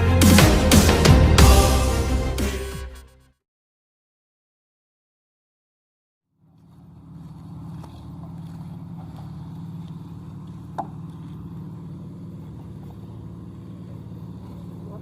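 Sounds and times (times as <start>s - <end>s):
concrete mixer engine running: 6.4s - 15.0s.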